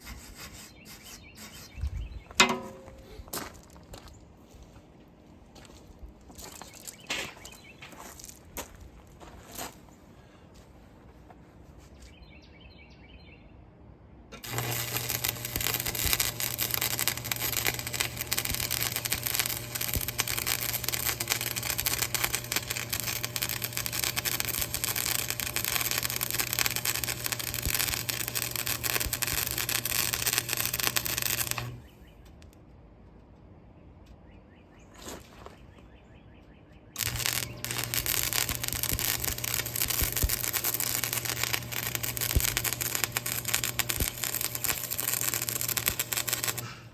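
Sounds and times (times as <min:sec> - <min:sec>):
welding arc crackling: 0:14.4 - 0:32.0, 0:37.0 - 0:46.9.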